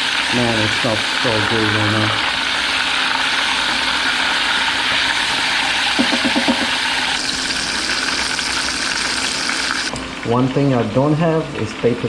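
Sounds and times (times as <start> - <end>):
fish sizzling in hot oil: 0.0 - 10.0.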